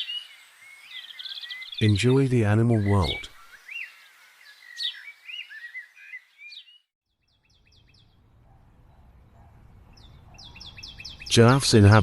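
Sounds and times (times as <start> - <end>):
faint repeated bird notes: 0.0 - 11.8
birds chirping rising calls: 0.0 - 12.0
low steady wind rumble: 7.3 - 12.0.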